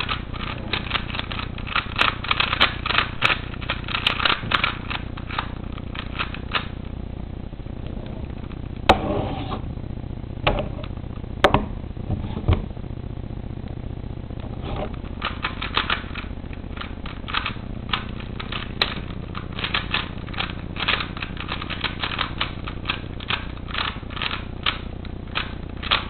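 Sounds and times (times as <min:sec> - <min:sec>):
puzzle cube layers clicking: 0:00.0 - 0:06.7, 0:14.9 - 0:26.0.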